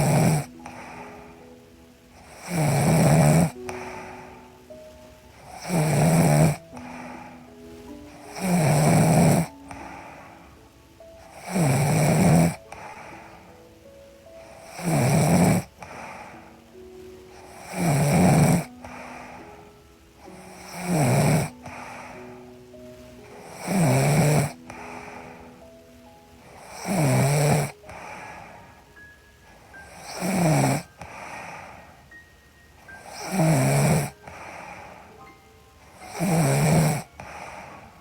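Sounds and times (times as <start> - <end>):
woman snoring: 0.0 - 1.4, 2.2 - 4.4, 5.4 - 7.4, 8.1 - 10.5, 11.2 - 13.5, 14.4 - 16.5, 17.3 - 19.4, 20.2 - 22.2, 23.4 - 25.6, 26.4 - 28.6, 29.7 - 31.8, 33.0 - 35.0, 35.9 - 38.0
soft background music: 0.0 - 38.0.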